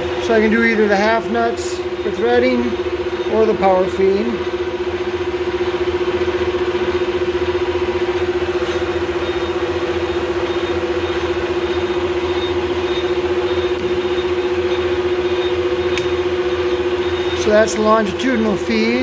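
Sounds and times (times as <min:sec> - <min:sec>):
lathe gear whine: 0:00.0 - 0:19.0
low motor hum: 0:00.0 - 0:19.0.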